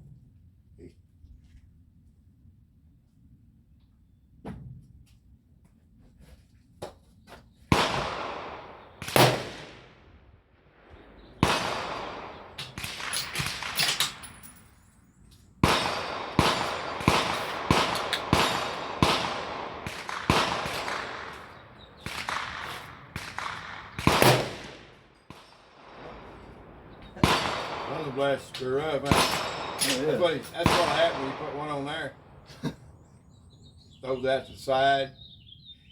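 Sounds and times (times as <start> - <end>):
gunshots with echoing tail: 7.7 - 14.6, 15.6 - 32.7.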